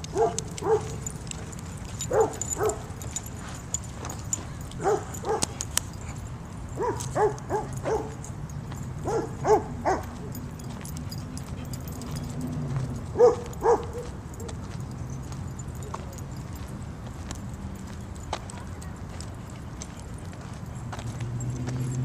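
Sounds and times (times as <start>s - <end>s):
dog barking: 0.1s - 1.1s, 2.1s - 3.0s, 4.8s - 5.6s, 6.8s - 8.2s, 9.0s - 10.4s, 13.2s - 14.6s.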